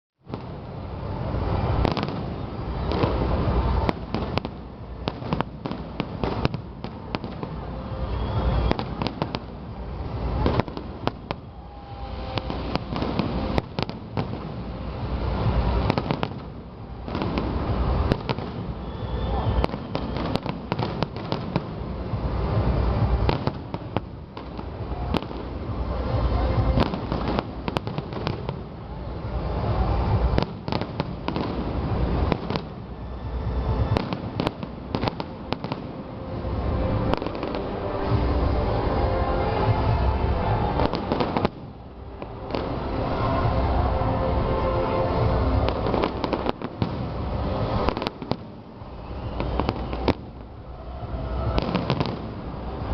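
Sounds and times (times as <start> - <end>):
low booming rumble of fireworks: 0.2 - 52.9
sharp firework bangs: 1.6 - 9.7, 10.3 - 25.8, 29.6 - 32.8, 33.8 - 35.9, 40.7 - 42.8, 51.4 - 52.4.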